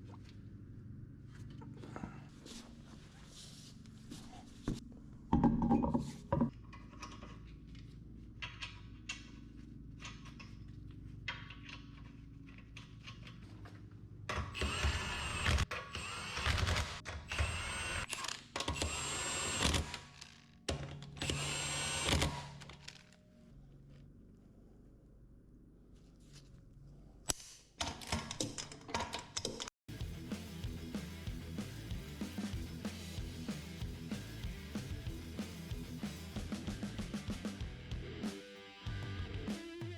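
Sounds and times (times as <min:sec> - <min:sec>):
power drill whining: 0:14.5 - 0:20.4, 0:21.2 - 0:23.0.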